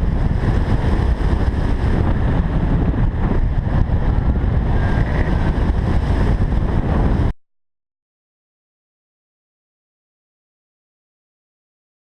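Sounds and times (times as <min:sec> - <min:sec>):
wind buffeting microphone: 0:00.0 - 0:07.4.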